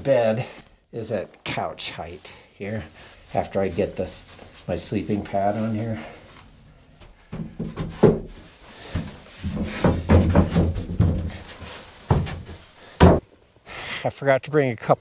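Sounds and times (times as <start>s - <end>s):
thuds and knocks on wooden platform: 7.3s - 13.2s.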